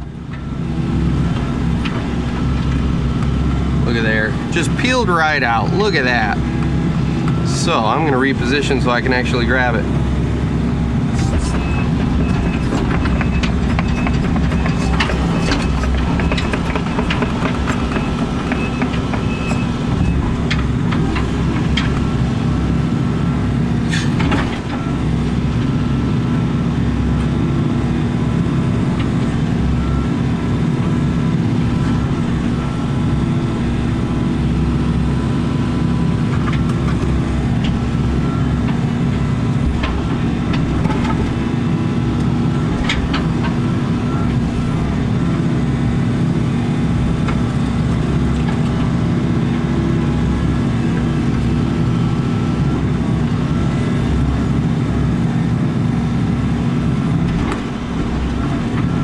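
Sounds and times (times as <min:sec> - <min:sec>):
diesel engine running: 0:00.0 - 0:59.0
hydraulic whine: 0:00.0 - 0:59.0
knocks and clanks on concrete: 0:12.0 - 0:19.6.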